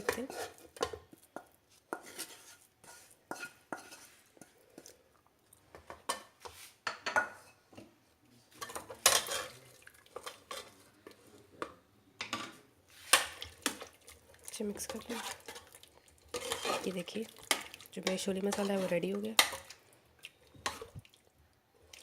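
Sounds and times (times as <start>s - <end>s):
metal spoon scraping a metal pot: 0.0s - 0.6s, 1.9s - 4.2s, 8.6s - 9.6s, 14.8s - 15.7s, 16.3s - 19.7s.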